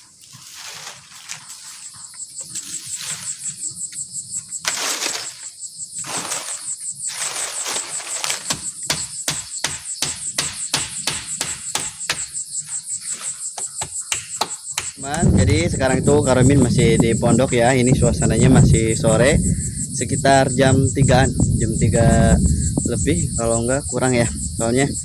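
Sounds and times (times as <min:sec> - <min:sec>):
shrill insect chorus: 0:00.0 - 0:25.0
quick regular knocks: 0:13.6 - 0:15.6.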